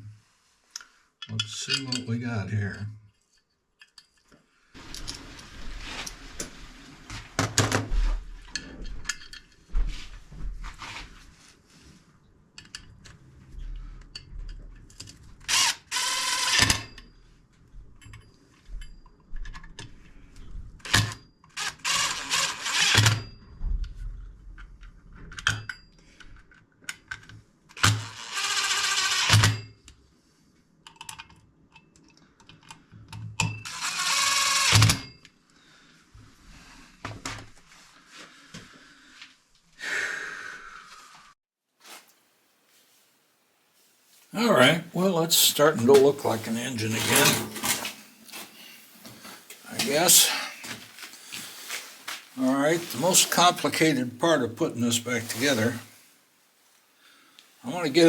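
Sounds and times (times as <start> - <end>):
tools and parts clinking: 1.2 - 2.2, 3.3 - 5.2, 8.4 - 9.7, 12.6 - 13.2, 18.0 - 20.0, 25.2 - 27.3, 46.9 - 48.4
power tool running: 15.5 - 16.8, 21.6 - 23.1, 33.7 - 34.9.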